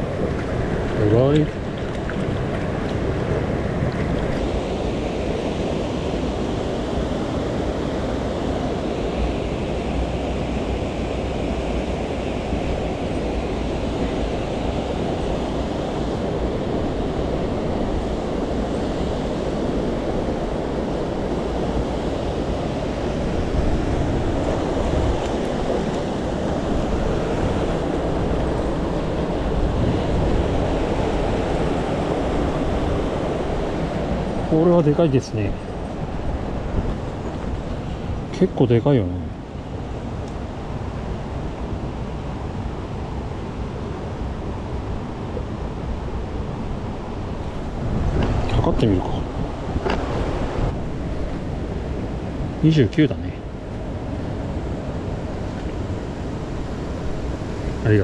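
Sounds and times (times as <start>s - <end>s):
stream rushing over rocks: 0.0s - 7.8s, 8.4s - 45.2s.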